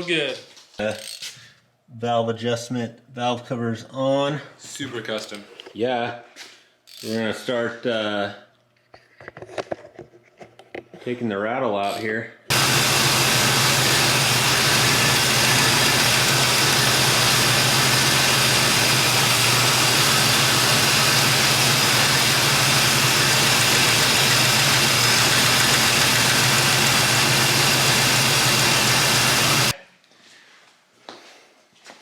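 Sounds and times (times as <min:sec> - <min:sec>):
valvetrain rattle: 0:12.5 - 0:29.7
engine running: 0:12.5 - 0:29.8.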